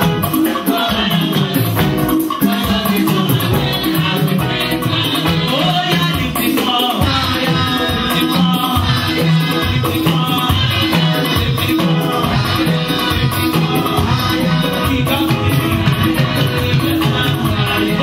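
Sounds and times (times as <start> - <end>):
church band music: 0.0 - 18.0
drums: 0.0 - 18.0
repeating bass line: 7.0 - 18.0.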